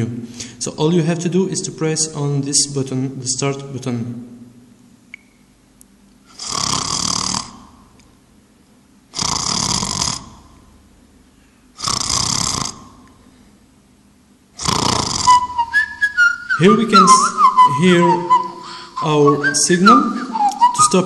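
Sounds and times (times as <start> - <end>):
person snoring: 6.3 - 7.8, 9.2 - 10.5, 11.8 - 13.1, 14.6 - 15.5.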